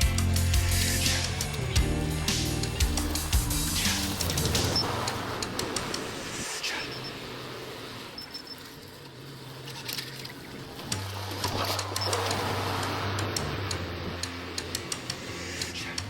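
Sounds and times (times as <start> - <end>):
low bass notes: 0.0 - 5.0, 11.0 - 16.0
whooshes: 0.0 - 8.2.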